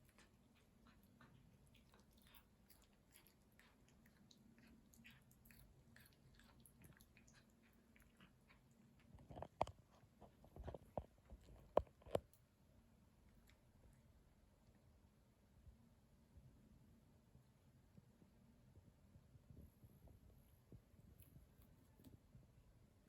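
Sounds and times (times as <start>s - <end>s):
cat chewing crunchily: 0.0s - 12.4s.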